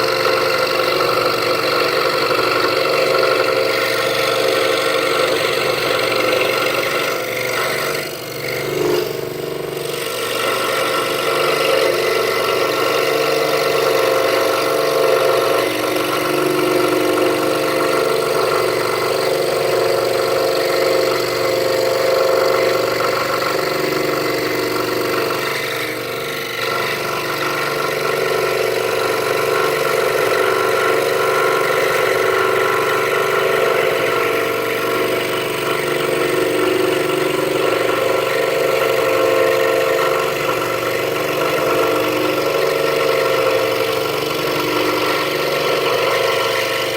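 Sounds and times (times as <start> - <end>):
scroll saw cutting wood: 0.0 - 46.9.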